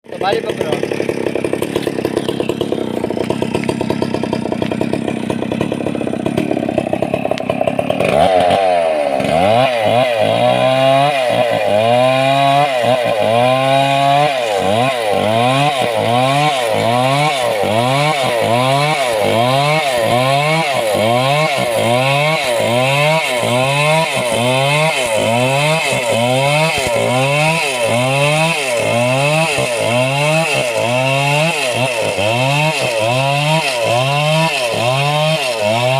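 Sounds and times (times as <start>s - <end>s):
chainsaw cutting wood: 0.0s - 35.9s.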